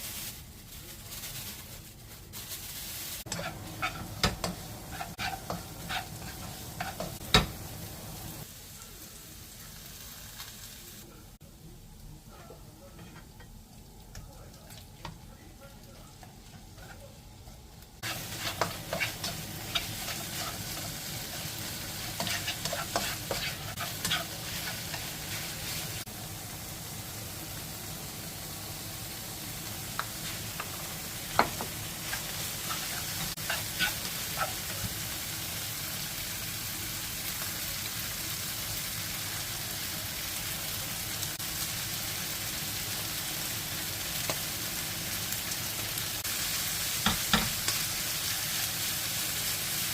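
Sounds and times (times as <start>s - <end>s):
rice sizzling in a frying pan: 0.0s - 49.9s
spatula scraping a pan: 3.2s - 7.2s, 18.0s - 26.0s, 31.3s - 34.7s.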